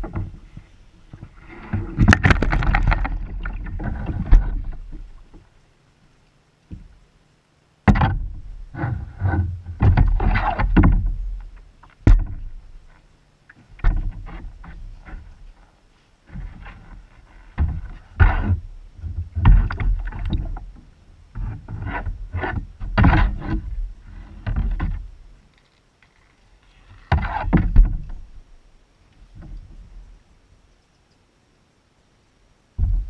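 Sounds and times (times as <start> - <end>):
paddle knocks against kayak hull: 7.8 - 11.2, 11.9 - 12.6.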